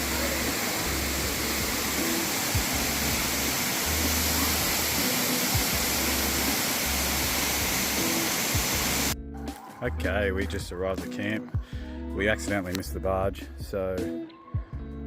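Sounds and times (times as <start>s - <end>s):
waterfall roaring: 0.0s - 9.2s
faint background music with bass: 0.0s - 15.0s.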